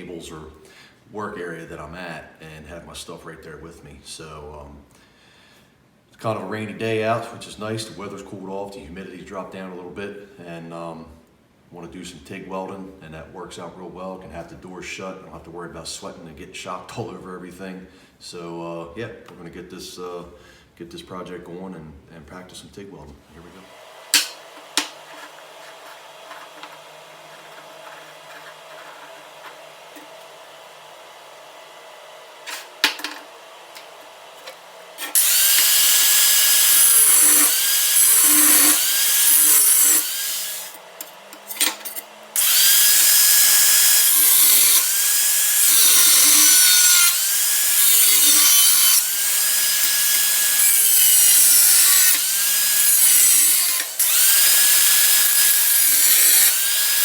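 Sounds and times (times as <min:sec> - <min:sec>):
power tool grinding steel: 0:23.6 - 0:57.0.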